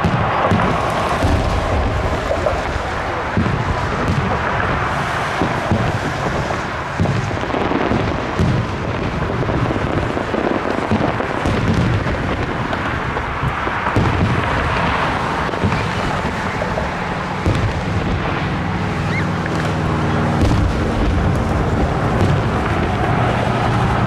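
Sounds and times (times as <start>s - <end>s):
fireworks booming: 0.0s - 24.0s.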